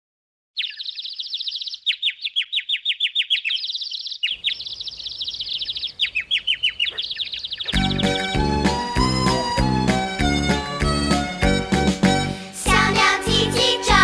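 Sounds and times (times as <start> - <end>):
small bird chirping and twittering: 0.6 - 8.0.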